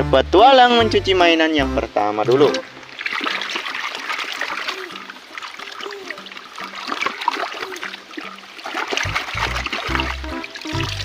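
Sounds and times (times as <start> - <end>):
stream water trickling and splashing: 2.0 - 11.0.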